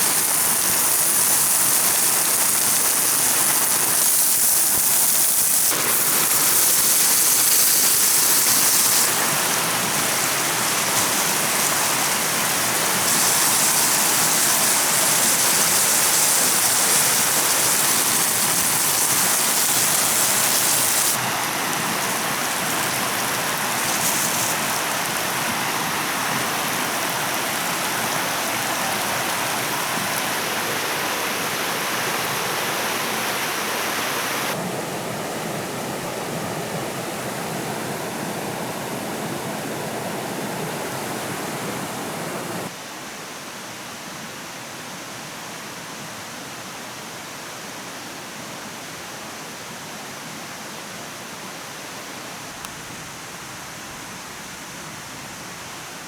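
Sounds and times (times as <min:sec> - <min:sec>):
water hissing: 0:00.0 - 0:42.8.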